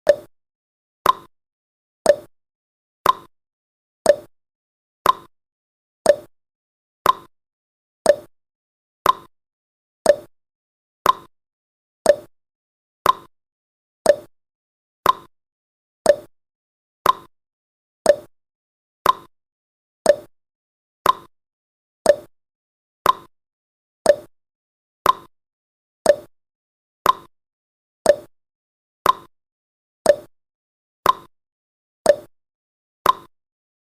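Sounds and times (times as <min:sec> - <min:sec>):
timer tick with short tone: 0:00.0 - 0:00.3, 0:01.0 - 0:01.3, 0:02.0 - 0:02.3, 0:03.0 - 0:03.3, 0:04.0 - 0:04.3, 0:05.0 - 0:05.3, 0:06.0 - 0:06.3, 0:07.0 - 0:07.3, 0:08.0 - 0:08.3, 0:09.0 - 0:09.3, 0:10.0 - 0:10.3, 0:11.0 - 0:11.3, 0:12.0 - 0:12.3, 0:13.0 - 0:13.3, 0:14.0 - 0:14.4, 0:15.0 - 0:15.3, 0:16.0 - 0:16.4, 0:17.0 - 0:17.3, 0:18.0 - 0:18.4, 0:19.0 - 0:19.3, 0:20.0 - 0:20.4, 0:21.0 - 0:21.3, 0:22.0 - 0:22.4, 0:23.0 - 0:23.3, 0:24.0 - 0:24.4, 0:25.0 - 0:25.3, 0:26.0 - 0:26.4, 0:27.0 - 0:27.4, 0:28.0 - 0:28.4, 0:29.0 - 0:29.4, 0:30.0 - 0:30.4, 0:31.0 - 0:31.4, 0:32.0 - 0:32.4, 0:33.0 - 0:33.4.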